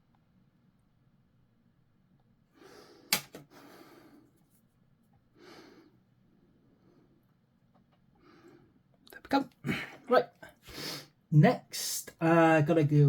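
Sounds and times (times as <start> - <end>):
breathing close to microphone: 2.6 - 4.3, 9.7 - 11.1
sharp click: 3.1 - 3.4.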